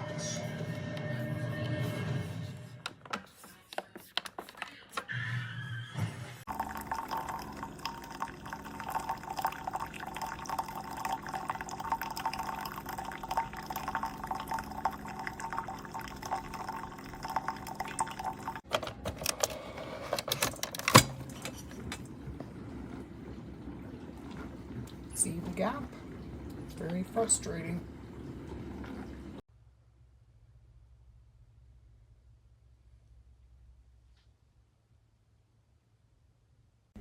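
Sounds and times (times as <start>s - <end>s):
low pump hum: 6.5s - 18.6s, 21.0s - 29.4s
water running into a cup: 6.5s - 18.6s, 21.2s - 29.4s.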